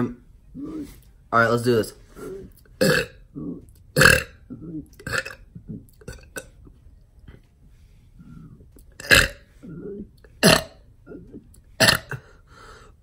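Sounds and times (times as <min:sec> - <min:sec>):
man burping: 0:02.8 - 0:06.6, 0:08.8 - 0:12.4.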